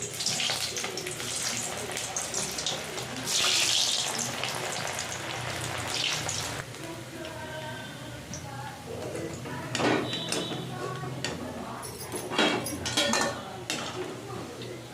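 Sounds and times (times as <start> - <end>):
water running from a tap: 0.0 - 6.6.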